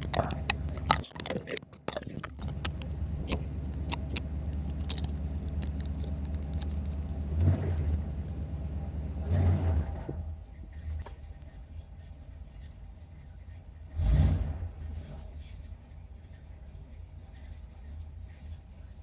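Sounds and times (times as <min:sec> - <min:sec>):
car engine running: 0:00.0 - 0:10.1.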